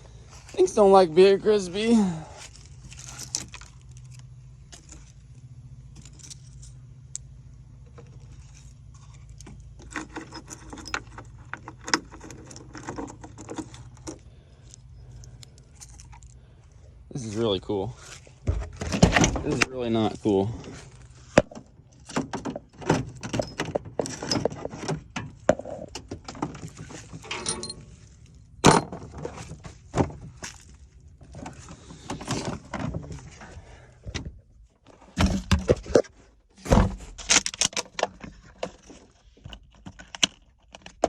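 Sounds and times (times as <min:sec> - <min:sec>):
clattering and knocking debris: 0:21.3 - 0:33.3.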